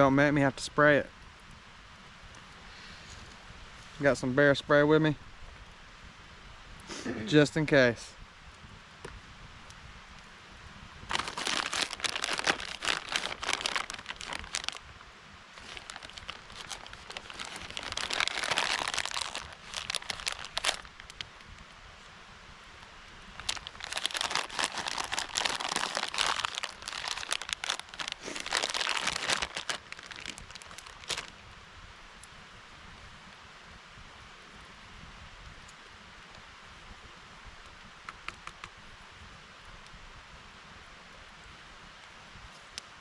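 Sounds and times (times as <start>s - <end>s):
plastic packaging crinkling: 11.1s - 14.8s, 15.6s - 21.3s, 23.4s - 31.4s.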